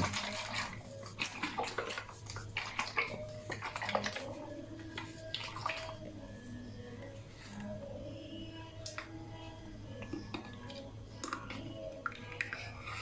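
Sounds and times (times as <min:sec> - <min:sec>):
liquid sloshing and splashing: 0:00.0 - 0:06.8.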